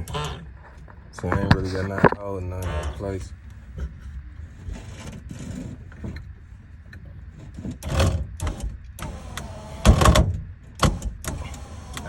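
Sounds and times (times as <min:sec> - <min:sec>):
sunroof mechanism clunking and rattling: 0:00.0 - 0:12.0
electric motor whine: 0:08.5 - 0:10.2, 0:10.9 - 0:12.0.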